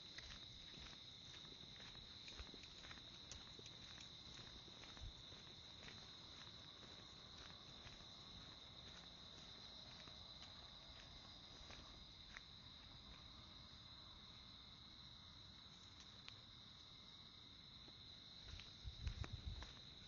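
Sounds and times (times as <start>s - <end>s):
soft footsteps: 0.0s - 13.5s, 17.9s - 20.0s
insects chirring: 0.0s - 20.0s.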